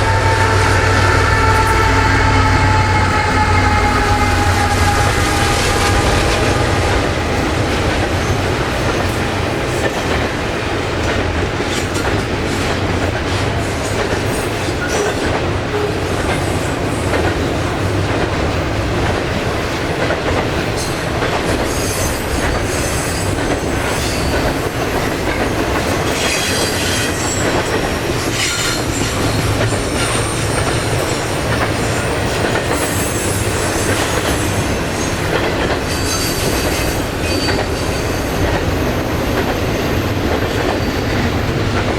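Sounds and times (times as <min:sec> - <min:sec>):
train wheels rumbling on rails: 0:00.0 - 0:41.9
train wheels squealing: 0:20.8 - 0:41.5.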